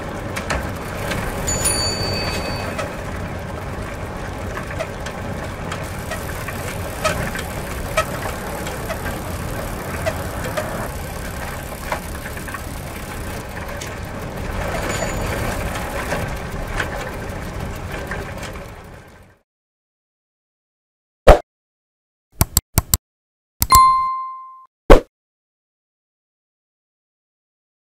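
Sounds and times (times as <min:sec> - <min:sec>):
bicycle clicks and rattles: 0:00.0 - 0:19.4
bicycle rumble: 0:00.0 - 0:19.4.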